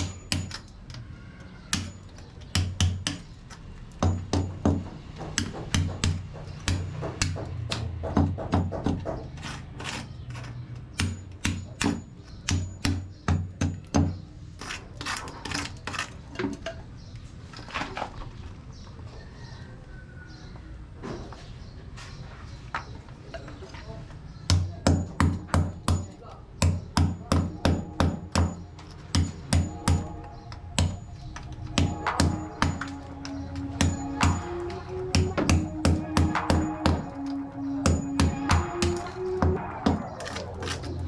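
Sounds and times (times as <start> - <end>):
hammer blows: 24.9 - 41.0.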